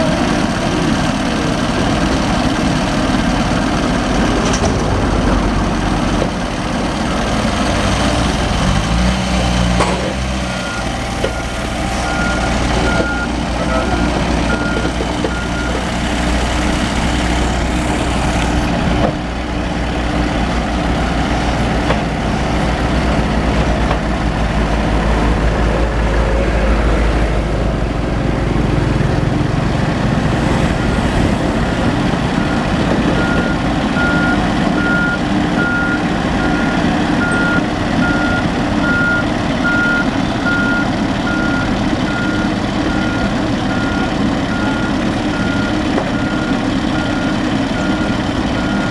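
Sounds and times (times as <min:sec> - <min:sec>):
diesel engine running: 0:00.0 - 0:48.9
reversing alarm beeps: 0:10.6 - 0:15.8, 0:32.4 - 0:48.9.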